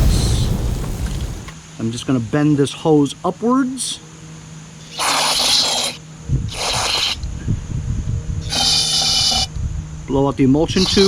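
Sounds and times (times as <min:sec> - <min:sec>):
low rumble: 0:00.0 - 0:01.6.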